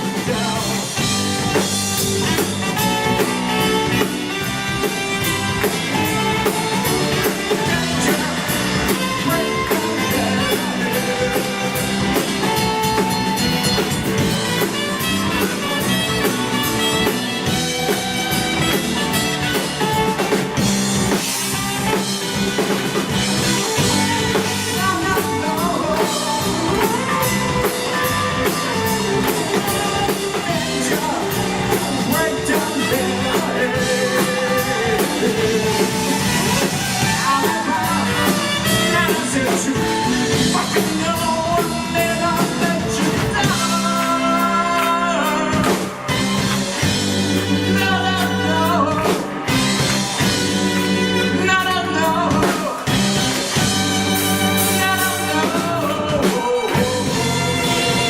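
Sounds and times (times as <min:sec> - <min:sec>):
bass: 0:00.0 - 0:58.0
drum kit cymbal beat: 0:00.0 - 0:58.0
guitar: 0:00.0 - 0:58.0
lead singer: 0:00.0 - 0:58.0.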